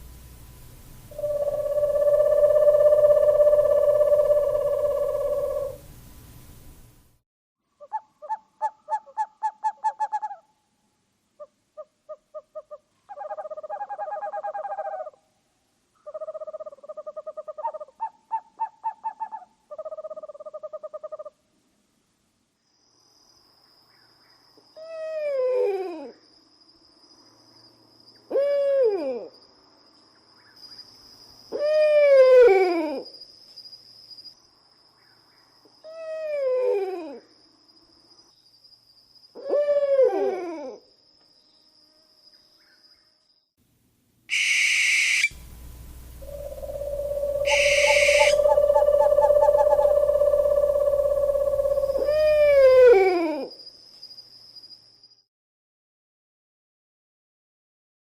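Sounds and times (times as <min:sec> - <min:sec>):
faint high-pitched tone: 0:00.0 - 0:05.9, 0:45.4 - 0:52.2
owl calls sliding downward: 0:01.1 - 0:05.9, 0:44.3 - 0:45.5, 0:46.1 - 0:53.2
owls trilling: 0:01.1 - 0:05.9, 0:44.3 - 0:53.5.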